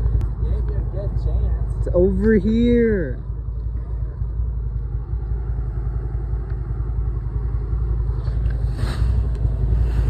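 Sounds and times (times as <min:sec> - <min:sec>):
vehicle engine idling: 0:00.0 - 0:10.0.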